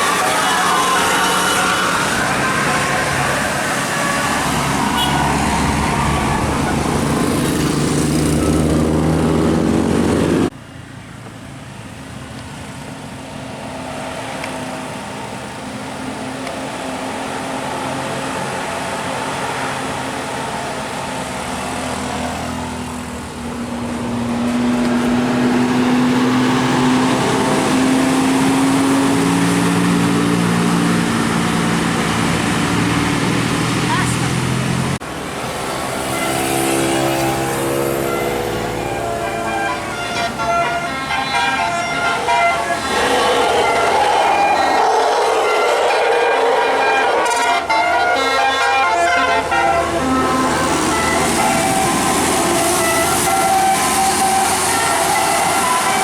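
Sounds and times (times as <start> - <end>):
bus musical air horns: 0.0 - 7.6, 35.9 - 56.0
traffic noise: 0.0 - 56.0
tone rising in pitch: 41.3 - 48.4.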